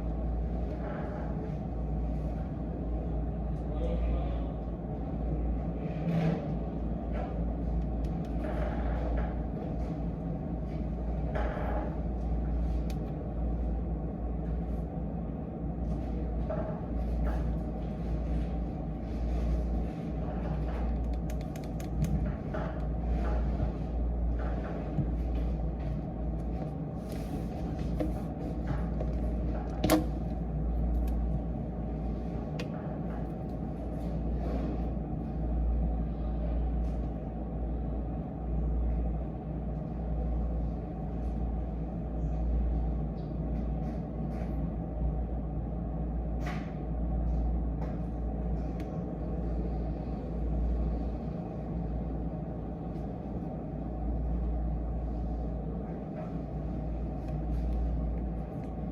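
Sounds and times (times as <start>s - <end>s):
low room rumble: 0.0s - 58.9s
light clicks and taps: 20.6s - 22.9s.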